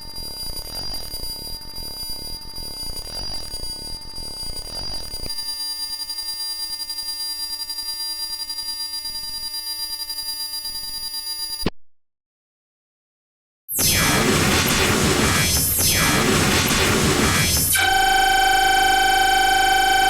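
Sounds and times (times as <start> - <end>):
buzzing synthesized note cluster: 13.7 - 20.0.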